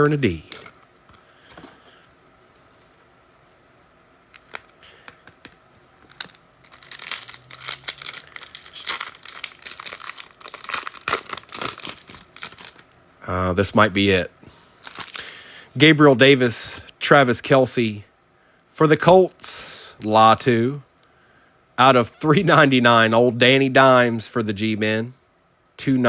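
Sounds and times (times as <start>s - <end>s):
foil wrapper tearing and crinkling: 4.3s - 4.8s, 6.0s - 12.9s, 14.8s - 15.4s.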